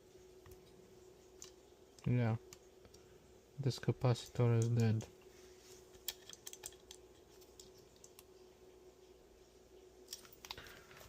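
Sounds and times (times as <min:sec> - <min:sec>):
faint steady hum: 0:00.0 - 0:11.0
tools clicking on circuit board: 0:06.1 - 0:07.0.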